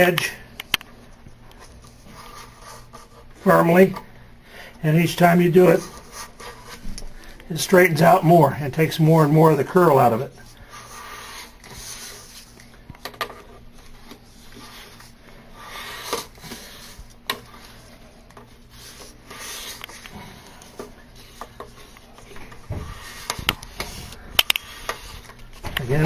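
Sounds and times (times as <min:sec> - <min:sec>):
tape strip rubbing swishes: 0:13.8 - 0:20.6.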